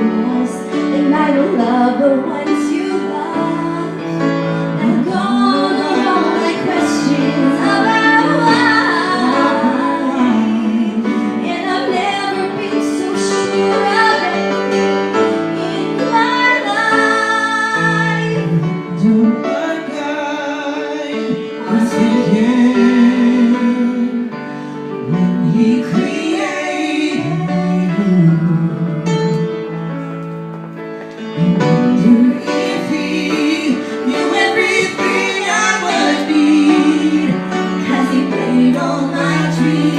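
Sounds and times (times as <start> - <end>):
woman singing: 0.0 - 14.6, 15.6 - 20.3, 31.4 - 39.9
instrumental accompaniment: 0.0 - 39.9.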